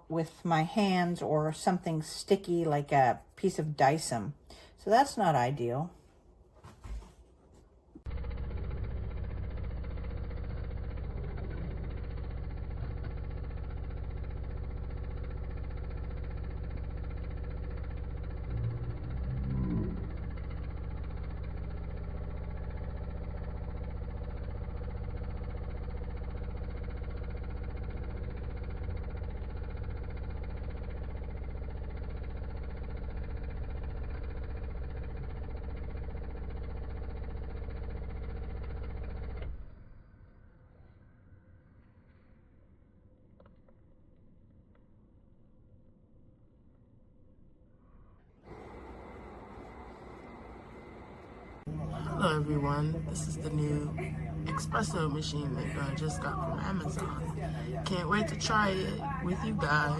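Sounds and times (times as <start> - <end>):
espresso machine pump buzzing: 8.1 - 39.4, 48.5 - 59.9.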